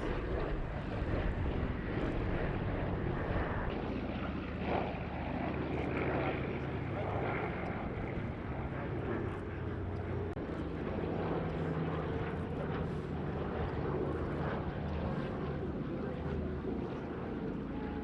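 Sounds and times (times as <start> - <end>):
propeller aircraft engines: 0.0 - 18.0.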